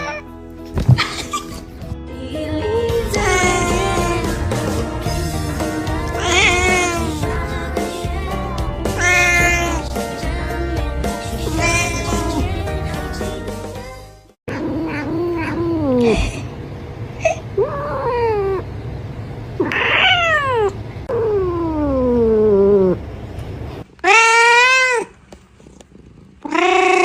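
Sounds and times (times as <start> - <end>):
cat meowing: 0.0 - 0.2, 3.0 - 4.3, 6.0 - 7.2, 9.0 - 9.9, 11.5 - 12.3, 19.6 - 23.0, 24.0 - 25.1, 26.4 - 27.0.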